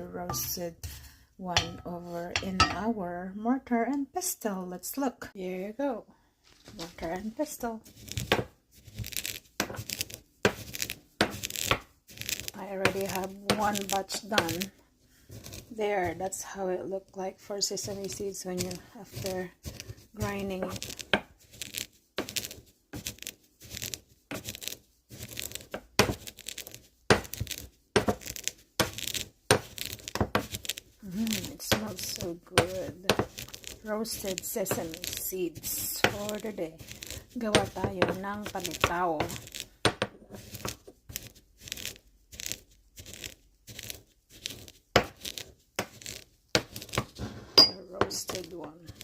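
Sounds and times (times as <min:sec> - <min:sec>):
pestle grinding in mortar: 0:07.8 - 0:14.6, 0:19.7 - 0:49.0.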